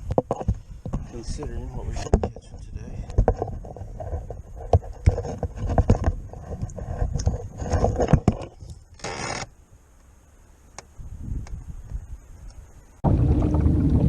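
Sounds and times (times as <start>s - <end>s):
fishing gear knocking and scraping: 0.0s - 9.5s.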